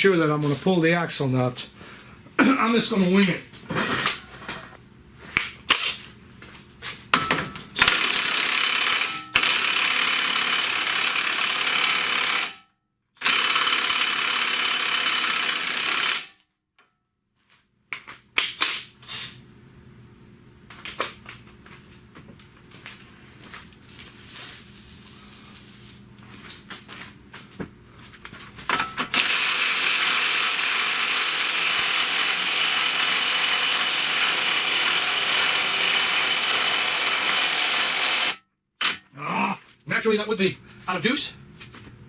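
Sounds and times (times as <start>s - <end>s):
hand tools clicking and clanking: 3.2s - 4.8s, 28.6s - 29.6s
pneumatic tool running: 7.7s - 12.6s, 13.2s - 16.4s, 28.7s - 39.1s.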